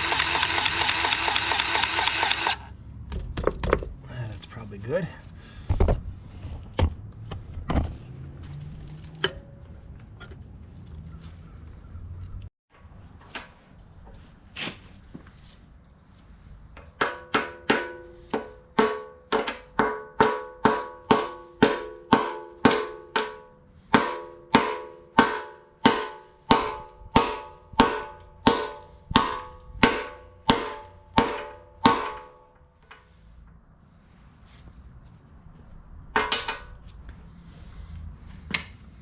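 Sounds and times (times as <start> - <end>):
hammer ringing on steel: 17.0 - 32.5.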